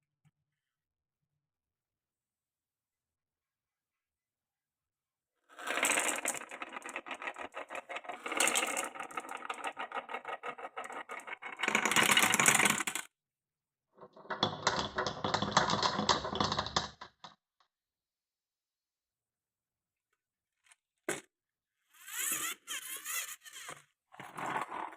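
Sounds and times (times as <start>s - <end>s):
marbles rattling down wooden run: 5.6s - 13.1s, 14.3s - 17.0s.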